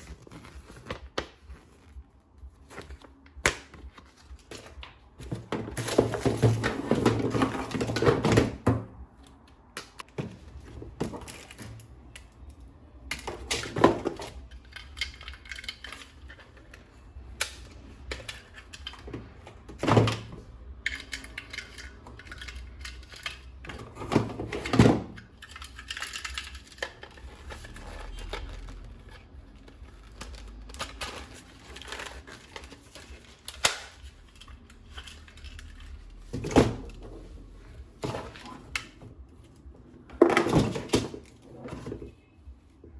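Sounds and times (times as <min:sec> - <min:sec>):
plastic toy parts clicking: 0:14.3 - 0:16.8, 0:25.3 - 0:28.6.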